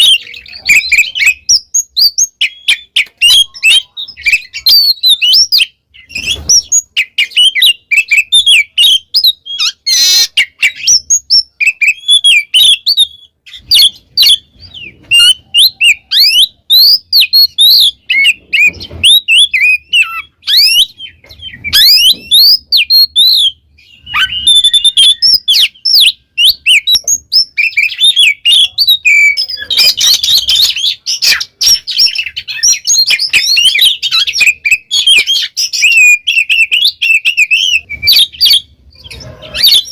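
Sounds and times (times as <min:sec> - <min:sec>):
bird singing whistles and chirps: 0:00.0 - 0:39.9.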